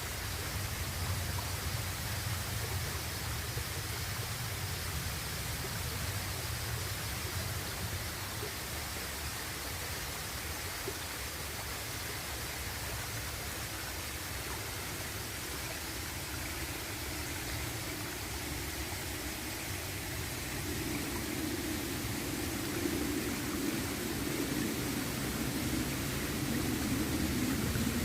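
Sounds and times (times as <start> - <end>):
waterfall rushing: 11.0 - 28.0.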